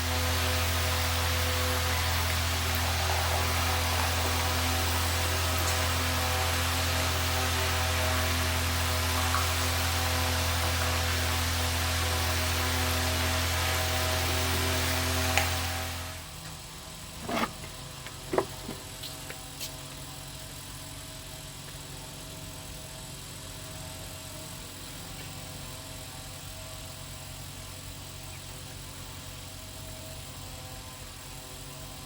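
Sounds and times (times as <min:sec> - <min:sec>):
low machine hum: 0:00.0 - 0:32.0.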